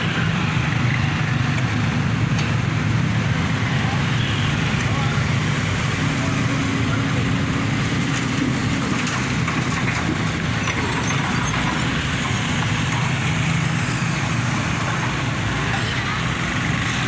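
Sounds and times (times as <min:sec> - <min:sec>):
large diesel engine running: 0:00.0 - 0:17.0.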